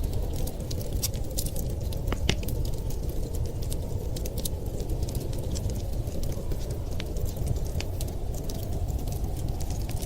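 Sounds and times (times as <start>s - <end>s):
wood fire crackling: 0.0s - 10.0s.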